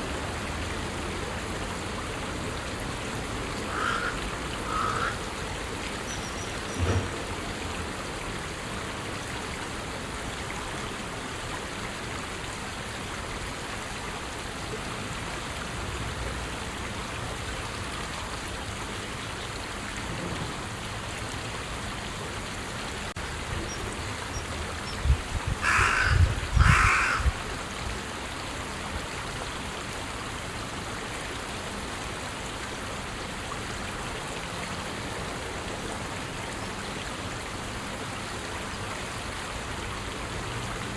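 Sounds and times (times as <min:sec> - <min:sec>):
crow cawing: 0:03.7 - 0:05.2, 0:25.6 - 0:27.3.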